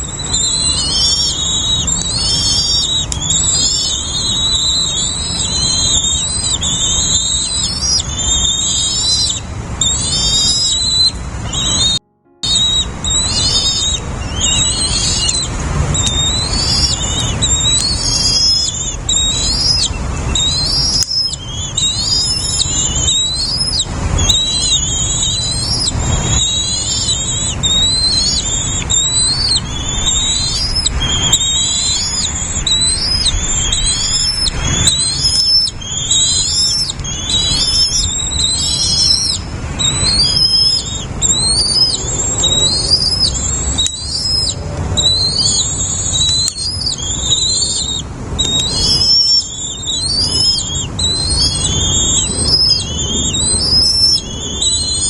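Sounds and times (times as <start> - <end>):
small birds chirping: 0.0 - 55.0
low rumble: 4.5 - 46.2.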